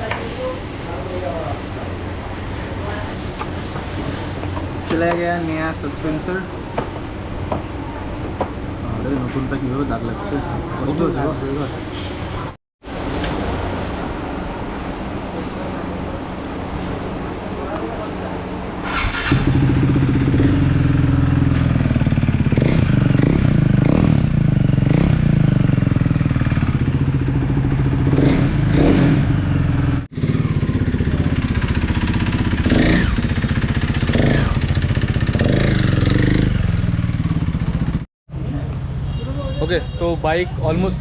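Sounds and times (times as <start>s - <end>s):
motorcycle engine revving: 18.8s - 38.1s.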